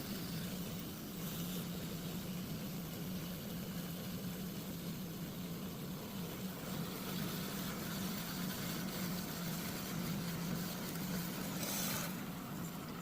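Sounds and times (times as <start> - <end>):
brief hiss: 6.6 - 12.8.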